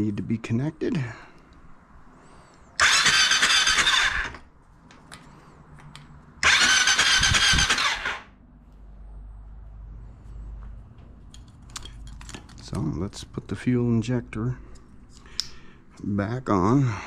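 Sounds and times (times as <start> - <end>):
electric starter cranking engine: 2.8 - 4.5, 6.4 - 8.3.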